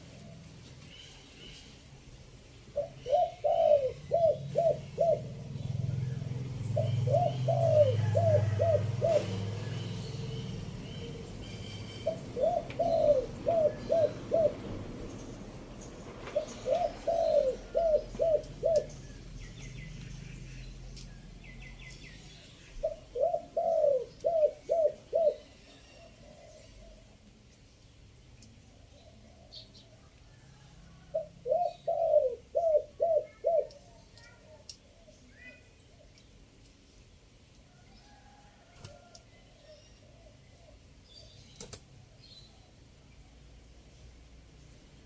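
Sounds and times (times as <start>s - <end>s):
small birds chirping: 0.0s - 30.4s, 31.2s - 38.2s, 38.9s - 45.0s
dove cooing: 2.7s - 15.1s, 16.2s - 19.1s, 22.7s - 27.2s, 28.8s - 33.9s.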